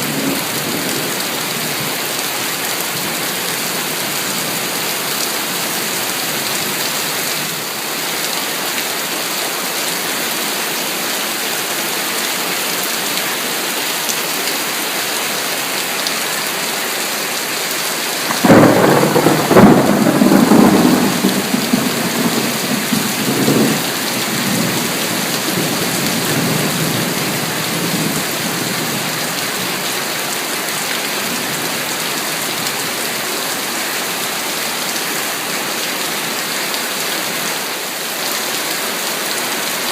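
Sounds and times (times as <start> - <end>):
heavy rain: 0.0 - 39.9
thunder crack and rumble: 18.3 - 27.3.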